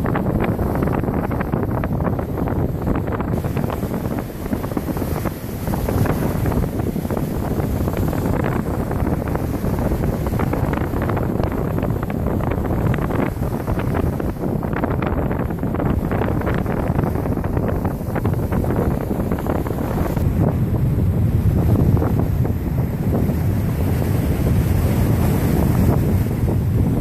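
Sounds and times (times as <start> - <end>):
wind buffeting microphone: 0.0 - 27.0.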